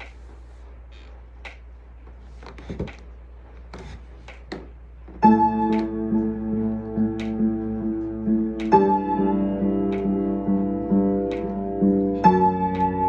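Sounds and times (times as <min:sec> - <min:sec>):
faint clicks and knocks: 0:00.0 - 0:09.0
held keyboard chord: 0:05.2 - 0:13.0.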